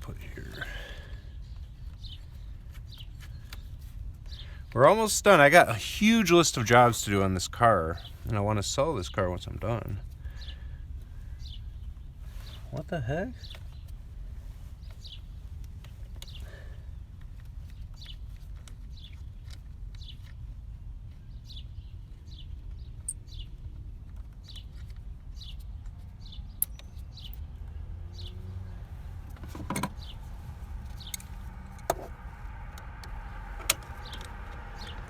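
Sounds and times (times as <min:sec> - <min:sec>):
small bird chirping: 0:24.3 - 0:35.0
steady low rumble: 0:28.8 - 0:35.0.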